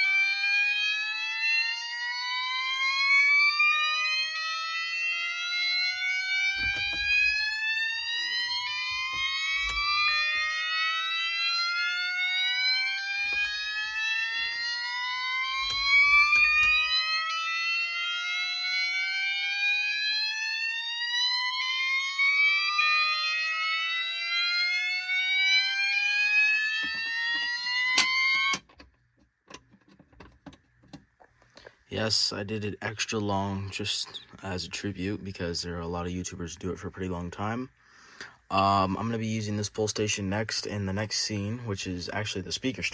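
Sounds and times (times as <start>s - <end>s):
fire alarm whoop tone: 0.0s - 28.6s.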